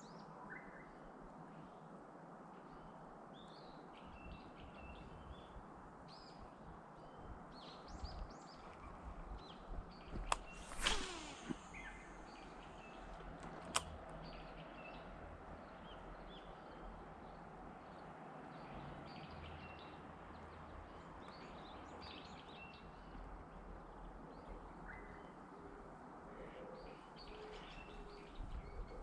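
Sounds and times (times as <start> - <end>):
steady outdoor background hiss: 0.0 - 29.0
small birds chirping: 2.6 - 29.0
sharp click: 10.2 - 12.4, 13.2 - 14.4
brief swish falling in pitch: 10.3 - 12.4.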